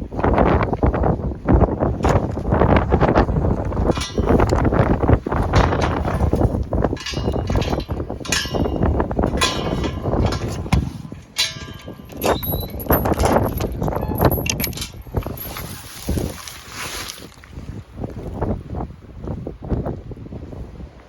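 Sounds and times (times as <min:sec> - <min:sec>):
strong wind buffeting microphone: 0:00.0 - 0:21.0
bright metallic clinks: 0:05.6 - 0:15.6.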